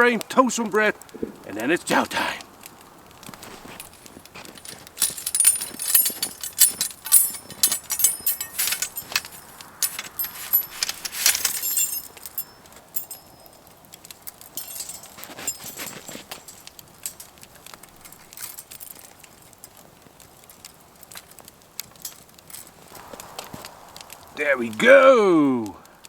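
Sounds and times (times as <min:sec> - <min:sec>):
metal parts clinking and rattling: 0:03.4 - 0:19.8, 0:20.5 - 0:22.9.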